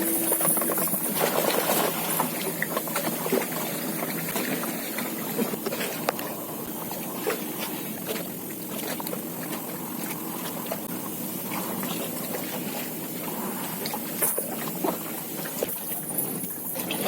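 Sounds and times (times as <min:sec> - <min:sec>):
water lapping and trickling: 0:00.0 - 0:17.0.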